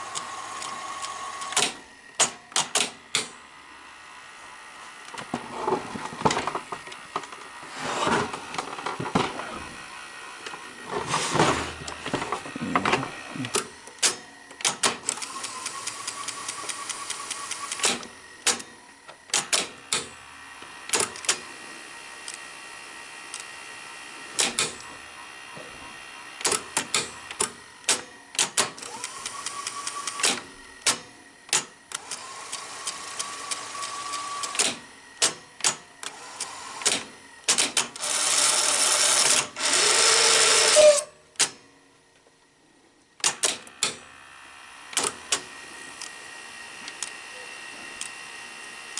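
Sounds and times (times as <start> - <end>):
motor whine: 0.0 - 2.2, 3.3 - 27.9
tape deck mechanism clicks and clunks: 0.0 - 3.4, 10.4 - 20.2, 20.8 - 21.5, 24.4 - 25.0, 26.4 - 41.8, 43.2 - 44.1, 44.9 - 46.2.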